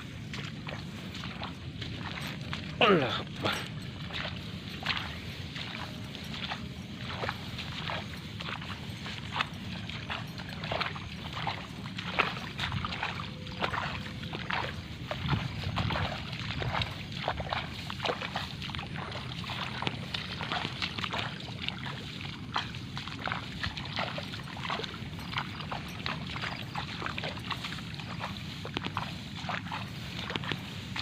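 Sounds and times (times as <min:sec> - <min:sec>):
sloshing steps in water and mud: 0:00.0 - 0:31.0
steady low rumble: 0:00.0 - 0:31.0.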